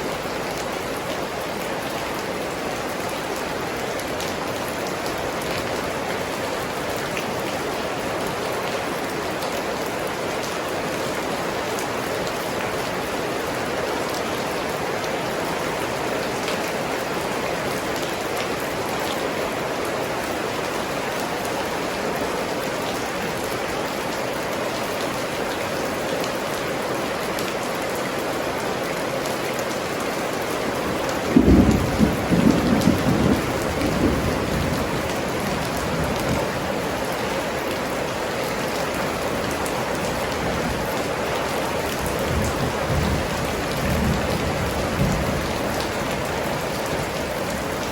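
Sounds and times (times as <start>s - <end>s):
steady rain falling: 0.0s - 47.9s
low roll of thunder: 31.3s - 36.5s.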